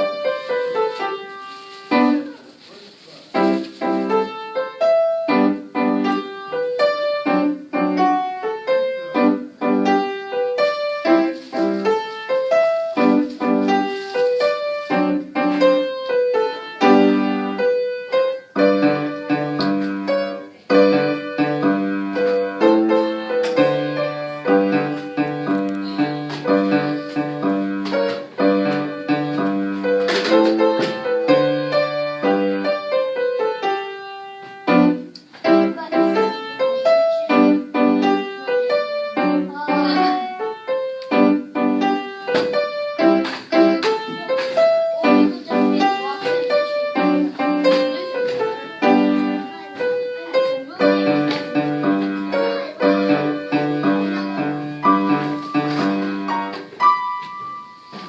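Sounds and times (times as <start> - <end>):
solo piano melody: 0.0 - 58.0.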